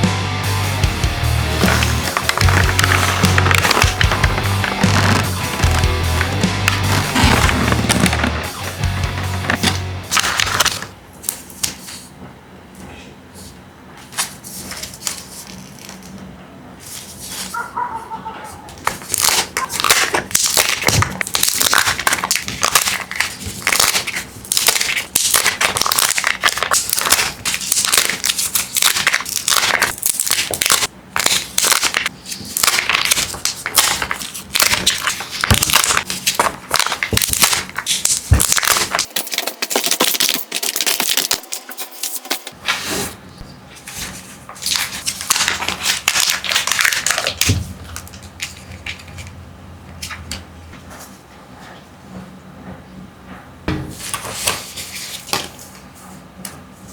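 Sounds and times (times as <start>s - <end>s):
plastic wrappers crinkling and tearing: 1.4s - 11.8s, 18.8s - 42.6s, 43.9s - 49.3s.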